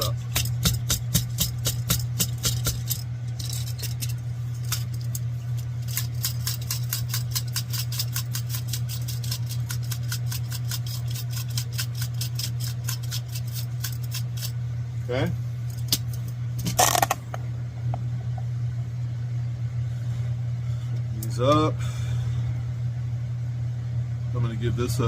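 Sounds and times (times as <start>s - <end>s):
electric fan humming: 0.0s - 25.0s.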